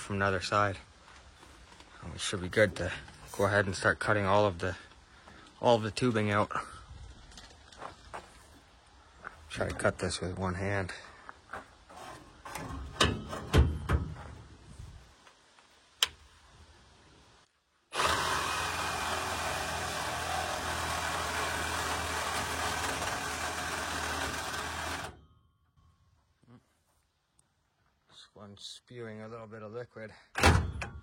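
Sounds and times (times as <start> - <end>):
power saw cutting copper tubing: 17.9 - 25.2.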